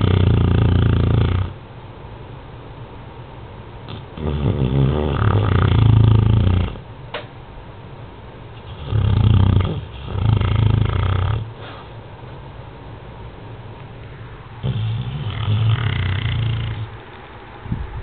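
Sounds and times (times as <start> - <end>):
dog snoring: 0.0 - 1.6, 3.9 - 6.9, 8.6 - 11.9, 14.5 - 17.0.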